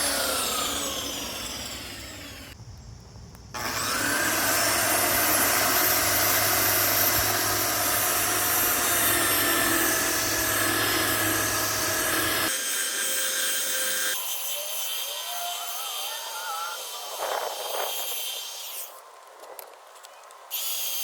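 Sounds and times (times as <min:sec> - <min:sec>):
belt sander on wood: 0:00.0 - 0:02.6, 0:03.6 - 0:19.0.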